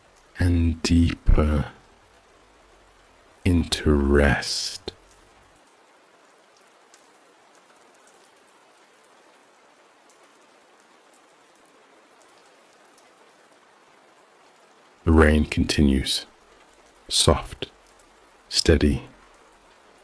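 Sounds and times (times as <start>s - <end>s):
faint steady rain: 0.0s - 20.0s.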